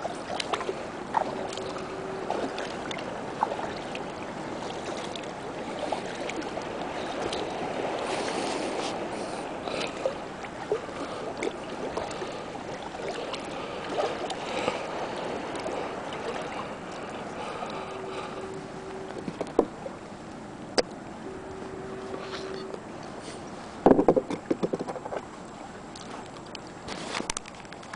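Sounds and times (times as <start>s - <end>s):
paddle splashes: 0.0s - 27.9s
water washing: 0.0s - 27.9s
steady single-pitched tone: 0.3s - 5.5s, 8.8s - 23.2s
paddle knocking against hull: 19.1s - 19.8s, 23.8s - 25.3s.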